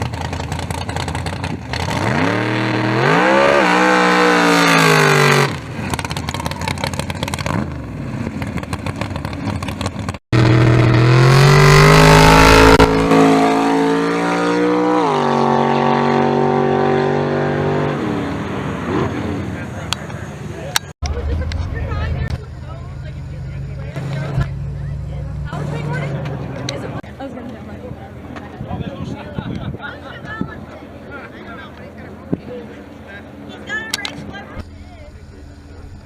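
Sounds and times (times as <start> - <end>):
drag race car engines accelerating: 0.0 - 27.1.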